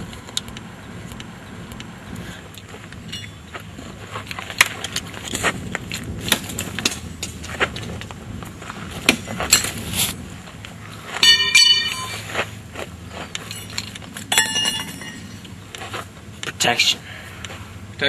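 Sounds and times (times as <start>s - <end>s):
gear clicks and rustles: 0.0s - 18.0s
bright metallic ringing: 11.2s - 12.3s, 13.5s - 15.5s.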